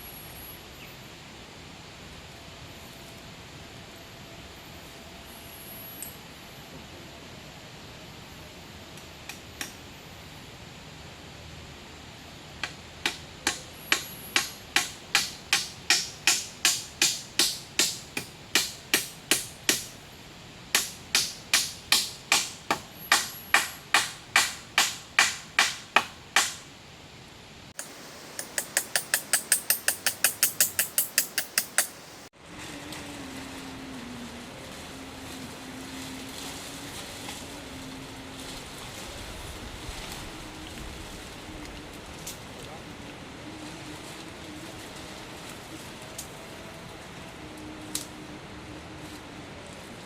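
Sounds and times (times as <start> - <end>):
steady hiss: 0.0 - 32.3
hand tool striking wood: 12.6 - 20.0, 20.7 - 26.7, 27.8 - 32.3.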